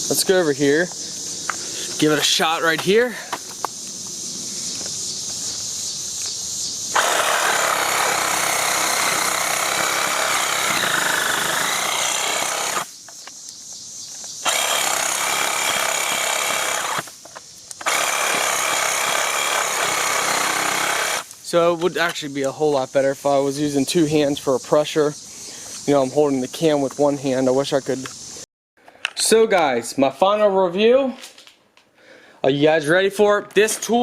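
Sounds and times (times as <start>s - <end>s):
power saw cutting wood: 6.9s - 12.9s, 14.4s - 17.1s, 17.8s - 21.3s.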